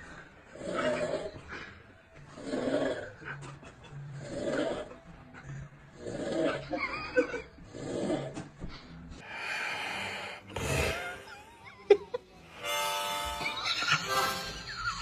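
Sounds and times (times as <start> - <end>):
long breaths: 8.6 - 11.2
person snoring: 9.2 - 11.5.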